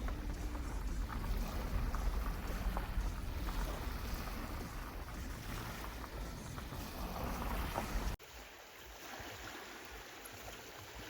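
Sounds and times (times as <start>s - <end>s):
wind rumbling on microphone: 0.0s - 8.2s
seaside ambience: 0.0s - 11.0s.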